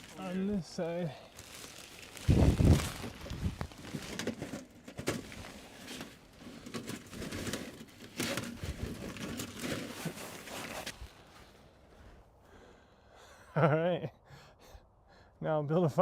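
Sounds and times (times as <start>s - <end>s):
tent fabric rustling: 0.0s - 11.8s.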